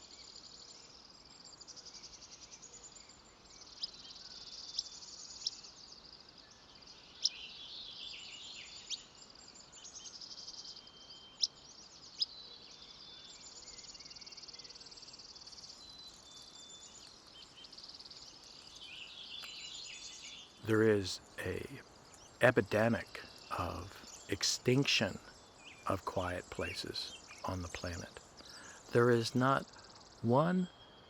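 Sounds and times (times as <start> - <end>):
bird chirps: 19.2 - 31.0
insects chirring: 20.7 - 31.0.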